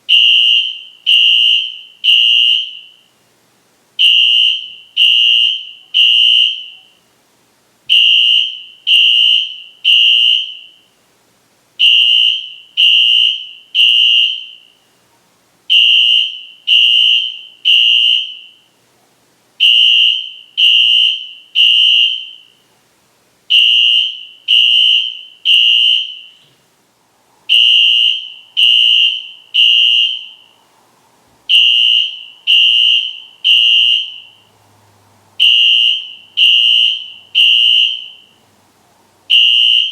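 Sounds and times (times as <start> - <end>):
fire alarm horn blasts: 0.1 - 3.1, 4.0 - 7.0, 7.9 - 11.0, 11.8 - 14.8, 15.7 - 18.7, 19.6 - 22.6, 23.5 - 26.5, 27.5 - 30.6, 31.5 - 34.5, 35.4 - 38.4, 39.3 - 39.9.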